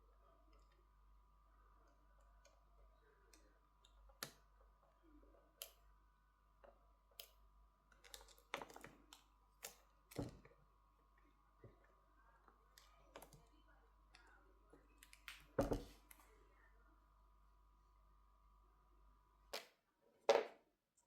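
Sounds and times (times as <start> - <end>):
faint steady hum: 0.0 - 21.0
small clicks and taps of parts: 6.6 - 10.6.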